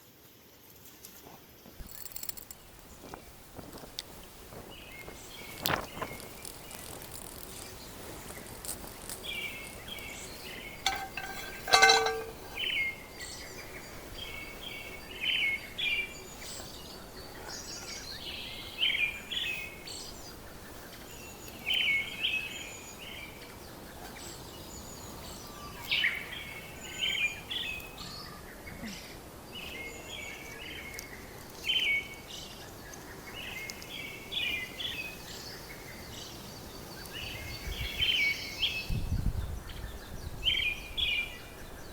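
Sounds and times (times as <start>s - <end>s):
metallic clink: 10.8s - 12.8s.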